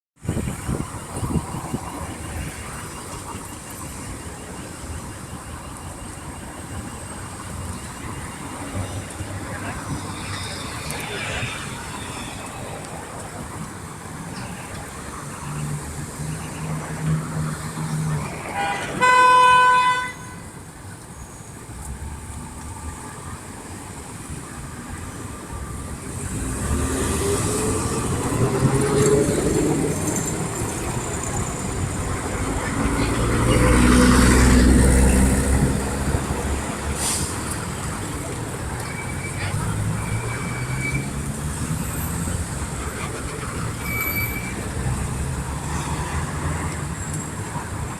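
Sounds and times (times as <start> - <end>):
street noise: 0.2 - 47.9
vehicles passing by: 0.2 - 47.9
vehicle horn blast: 18.5 - 20.4.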